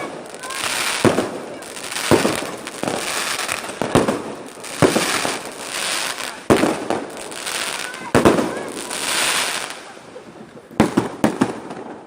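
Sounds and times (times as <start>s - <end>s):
fireworks bangs: 0.0s - 12.0s
fireworks crackling: 0.0s - 12.0s.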